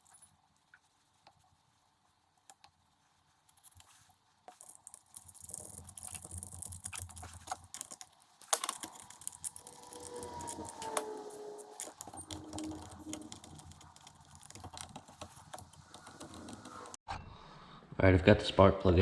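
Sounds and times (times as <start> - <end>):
rustling: 0.0 - 17.0
tools clicking and rattling: 4.5 - 17.0.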